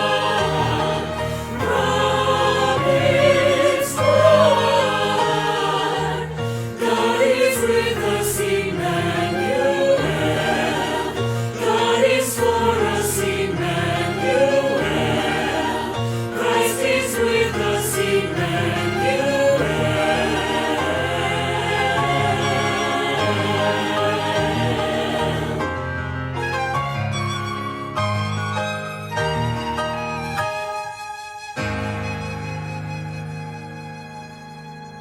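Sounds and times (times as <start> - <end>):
choir singing a hymn: 0.0 - 26.7.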